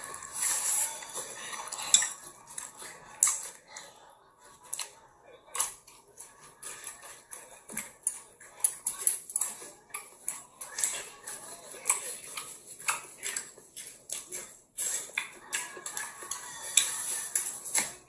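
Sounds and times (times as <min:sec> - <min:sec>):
utensils clinking on plates: 0:06.6 - 0:18.0.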